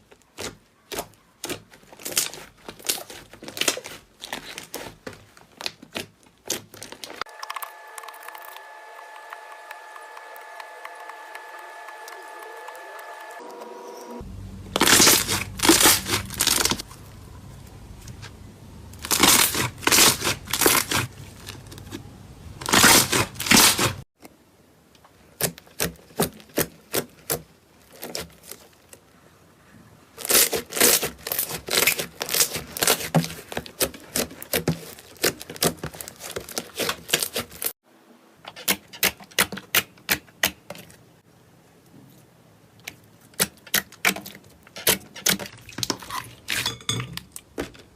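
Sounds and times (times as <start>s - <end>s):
slime crackling and popping: 14.7s - 16.9s, 18.9s - 22.0s.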